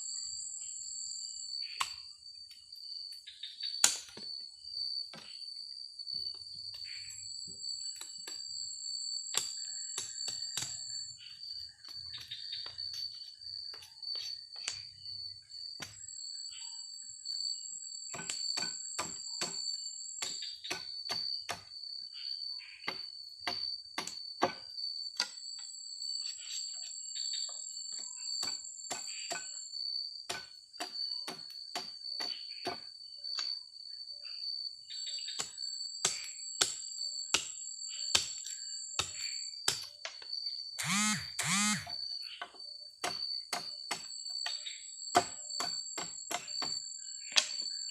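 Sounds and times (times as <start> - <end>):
crickets trilling: 0.0 - 47.9
higher insect trill: 40.3 - 47.9.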